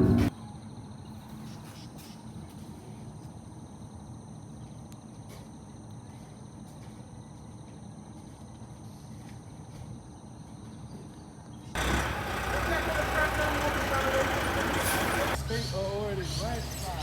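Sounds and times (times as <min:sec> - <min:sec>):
insect chorus: 0:00.3 - 0:17.0.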